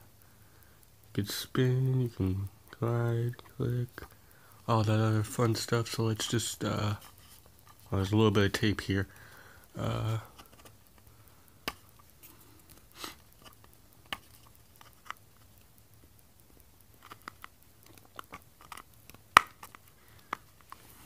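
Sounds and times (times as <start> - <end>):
plastic case clicks and crackles: 17.0 - 20.8.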